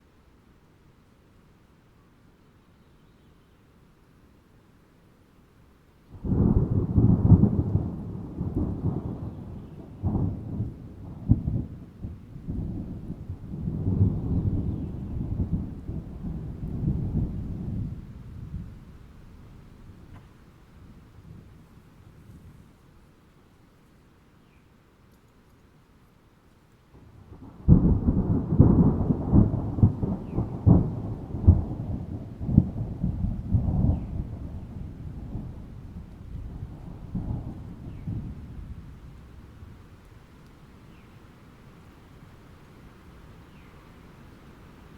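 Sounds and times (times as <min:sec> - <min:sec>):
thunder rumbling: 0:06.1 - 0:20.2, 0:27.0 - 0:40.1
sharp thunder clap: 0:27.4 - 0:35.6.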